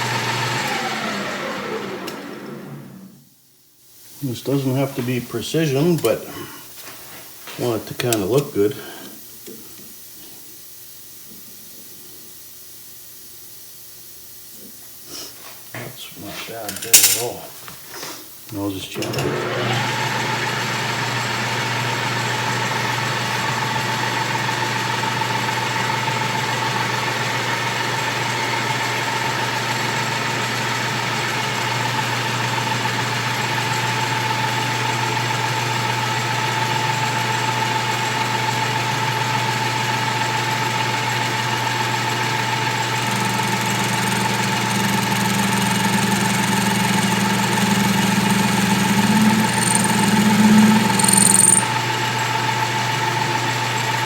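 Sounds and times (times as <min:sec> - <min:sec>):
metal lathe whining: 0:00.0 - 0:03.0, 0:35.8 - 0:54.0
deeper hum: 0:47.4 - 0:51.7
faint high whine: 0:47.4 - 0:51.8.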